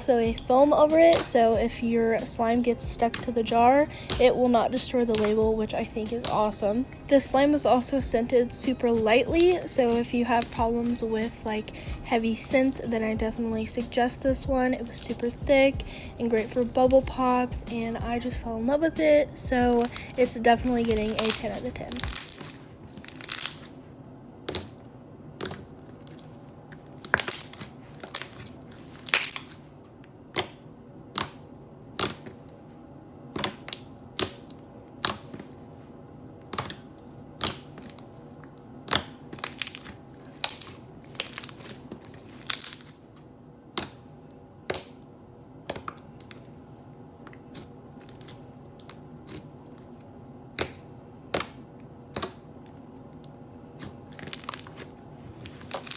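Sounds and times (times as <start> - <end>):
slime squeezed: 19.7 - 23.8, 27.0 - 29.6, 53.8 - 55.9.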